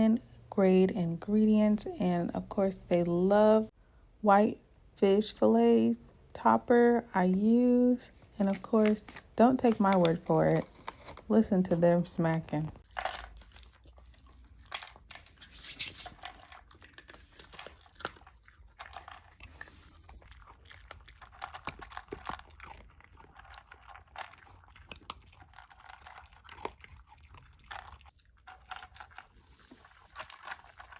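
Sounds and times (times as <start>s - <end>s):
dogs chewing food: 12.8s - 30.9s.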